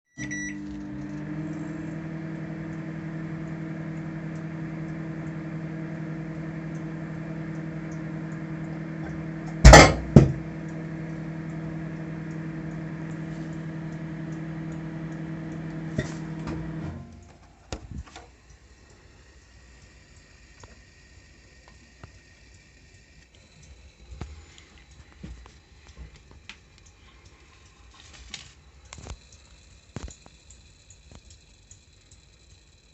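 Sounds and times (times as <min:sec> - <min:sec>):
microwave oven humming: 0:00.1 - 0:27.4
microwave clicks: 0:00.2 - 0:17.2.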